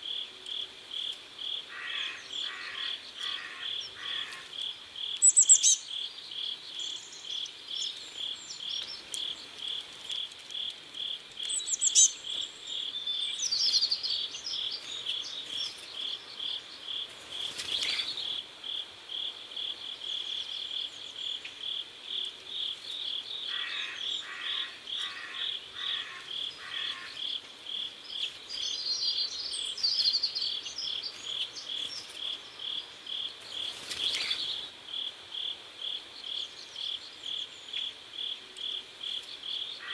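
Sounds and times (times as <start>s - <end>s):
crickets chirping: 0.0s - 39.9s
high-pitched insect or bird chirps: 5.2s - 5.8s.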